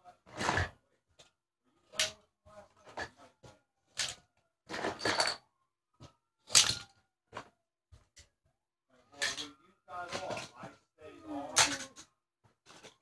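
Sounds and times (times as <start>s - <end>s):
toy cars crashing: 1.9s - 2.2s, 3.9s - 5.4s, 6.4s - 7.0s, 9.1s - 10.7s, 11.5s - 12.1s.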